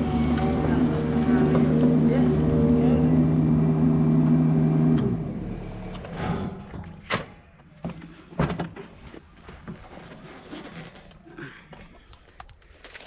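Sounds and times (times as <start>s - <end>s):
engine shutting off: 0.0s - 6.5s.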